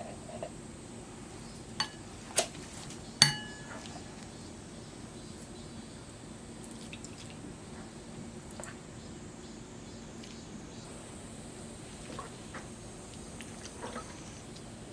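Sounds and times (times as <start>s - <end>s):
faint steady hum: 0.0s - 14.9s
utensils knocking on dishware: 1.8s - 2.1s, 3.2s - 4.0s.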